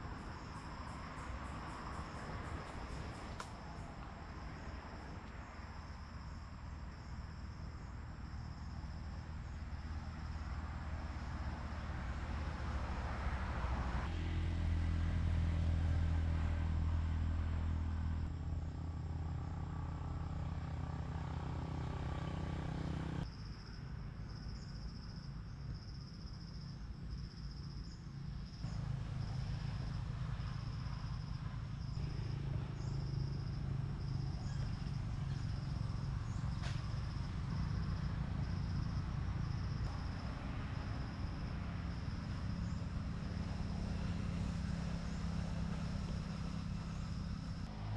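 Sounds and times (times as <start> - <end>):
insect chirping: 0.0 - 13.8, 23.2 - 47.7
vehicle engines rumbling: 0.0 - 23.3, 26.9 - 47.9.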